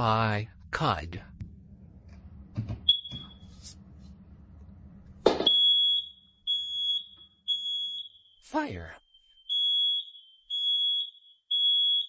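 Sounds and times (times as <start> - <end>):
high-pitched alarm beeping: 5.4 - 8.4, 9.1 - 12.0.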